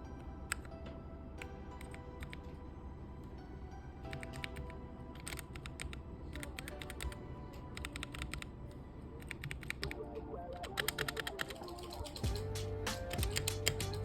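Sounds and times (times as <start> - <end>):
mechanical keyboard typing: 1.7 - 2.5, 4.1 - 8.5, 9.2 - 14.0.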